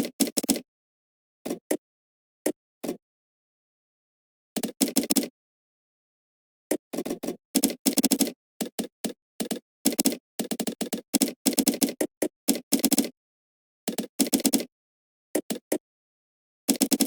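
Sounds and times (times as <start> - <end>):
typing on computer keyboard: 0.0 - 0.6, 4.6 - 5.3, 6.9 - 13.1, 13.9 - 14.7, 15.4 - 15.8, 16.7 - 17.0.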